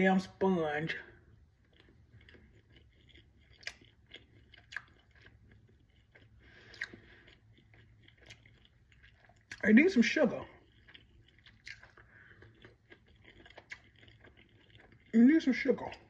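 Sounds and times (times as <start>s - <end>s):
person chewing: 0.8s - 16.0s
mouth clicks and smacks: 1.6s - 9.7s, 10.7s - 15.1s.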